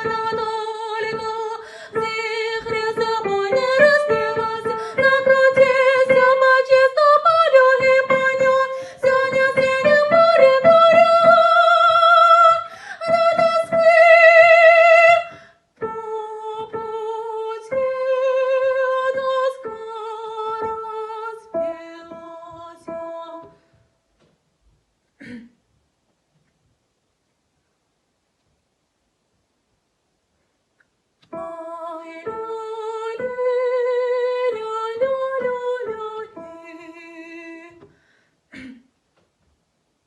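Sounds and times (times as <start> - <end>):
woman singing with vibrato: 0.0 - 23.6, 31.3 - 37.9.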